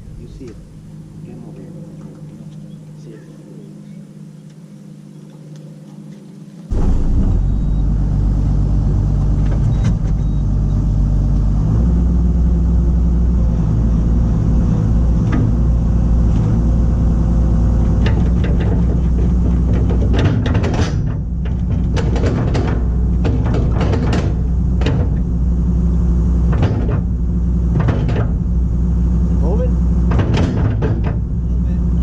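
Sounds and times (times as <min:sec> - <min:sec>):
excavator diesel engine running: 0:06.7 - 0:32.0
sharp clicks and knocks: 0:15.2 - 0:15.6, 0:17.8 - 0:25.4, 0:26.5 - 0:28.5, 0:30.1 - 0:31.4.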